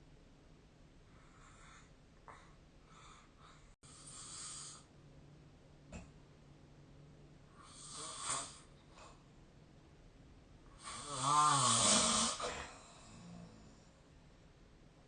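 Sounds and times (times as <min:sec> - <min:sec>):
person snoring: 0:03.8 - 0:04.9, 0:07.6 - 0:08.7, 0:10.8 - 0:13.7.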